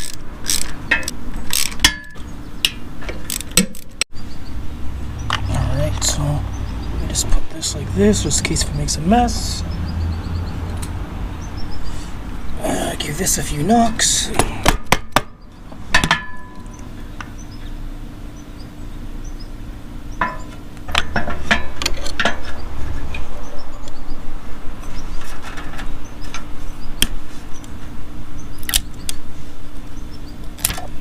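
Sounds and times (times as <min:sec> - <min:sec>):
hand tools clicking and clanking: 0:00.0 - 0:04.0, 0:20.2 - 0:23.3.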